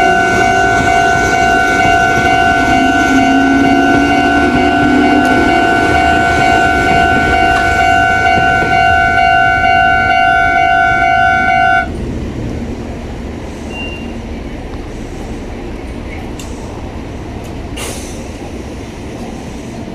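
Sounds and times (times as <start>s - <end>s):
level crossing alarm ringing: 0.0s - 11.9s
train rumble: 0.0s - 19.9s.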